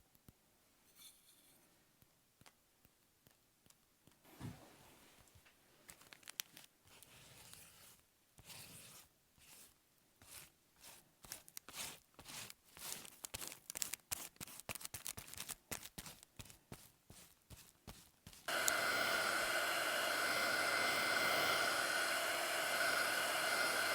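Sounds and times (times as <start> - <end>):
paper crackling: 5.9 - 6.8, 11.4 - 16.6.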